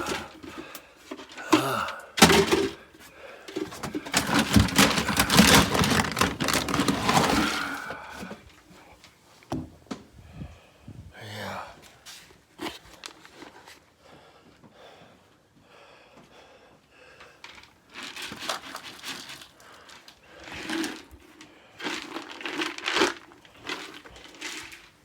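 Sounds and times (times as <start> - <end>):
handling noise: 0.0 - 8.6
rustling and crinkling: 0.0 - 10.2, 11.8 - 13.9, 17.2 - 25.0.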